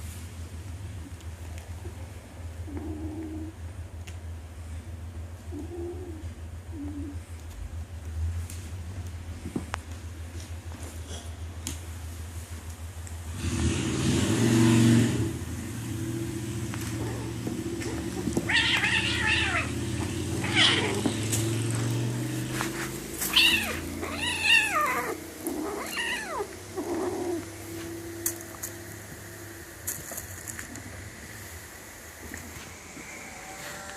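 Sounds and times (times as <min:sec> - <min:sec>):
low steady hum: 0:00.0 - 0:13.4, 0:14.5 - 0:33.9
kitten meowing: 0:17.0 - 0:21.2, 0:23.2 - 0:27.4.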